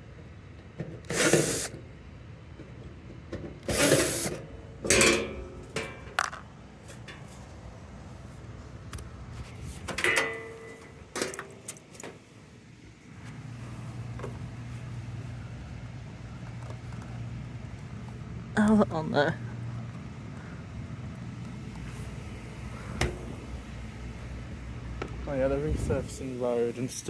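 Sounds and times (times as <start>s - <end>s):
power tool bursts: 1.1s - 1.8s, 3.7s - 5.2s
metallic clicks and clanks: 3.6s - 7.4s, 9.9s - 12.2s.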